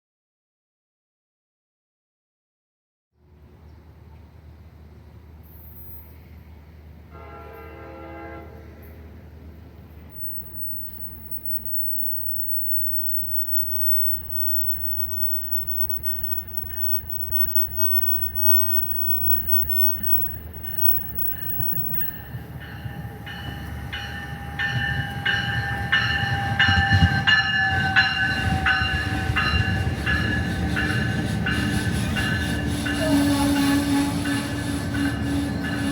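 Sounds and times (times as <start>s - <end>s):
train rumble: 4.0s - 35.9s
bell ringing: 10.2s - 22.3s.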